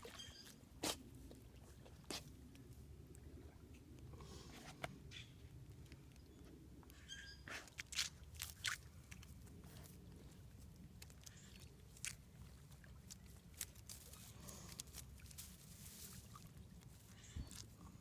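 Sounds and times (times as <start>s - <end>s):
puppy digging at ground: 7.4s - 18.0s.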